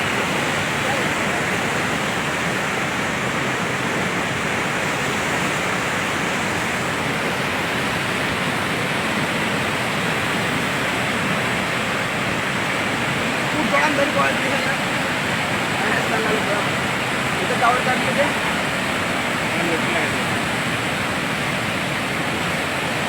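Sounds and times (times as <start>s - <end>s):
floodwater rushing: 0.0s - 23.0s.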